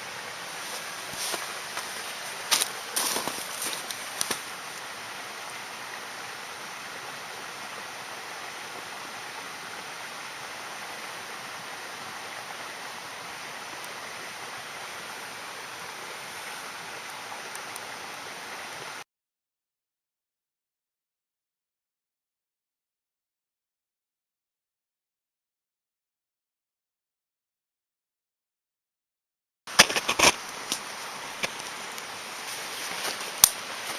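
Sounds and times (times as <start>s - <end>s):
flowing water rushing: 0.0s - 19.0s, 29.7s - 33.9s.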